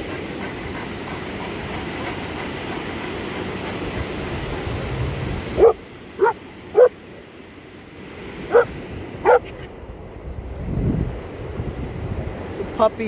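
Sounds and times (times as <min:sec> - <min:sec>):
wind: 0:00.0 - 0:13.0
dog barking: 0:05.6 - 0:07.0, 0:08.5 - 0:09.5.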